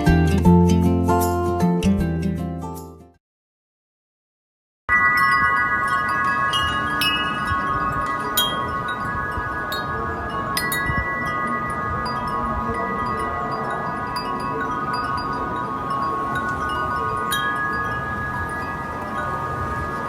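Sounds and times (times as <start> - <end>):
wind chimes ringing: 4.9 - 20.0.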